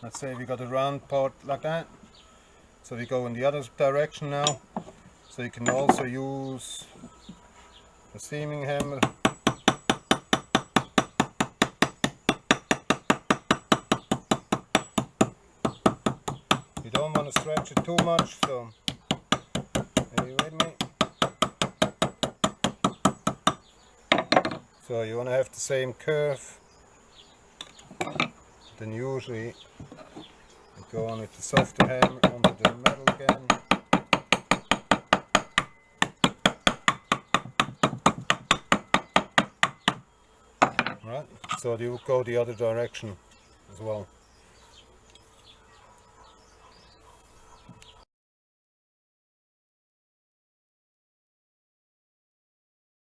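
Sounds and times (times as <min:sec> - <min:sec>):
hammer striking copper sheet: 0:05.6 - 0:06.1, 0:31.6 - 0:40.0.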